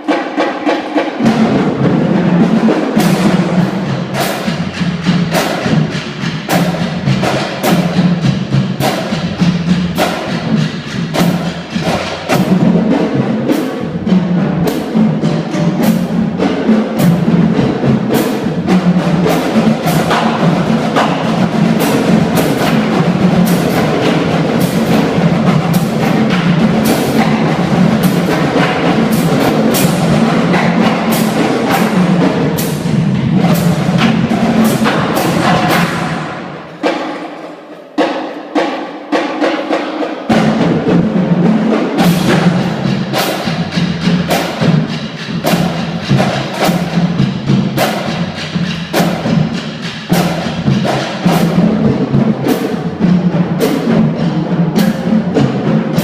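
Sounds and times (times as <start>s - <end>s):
marching drumline playing: 0.0s - 56.0s.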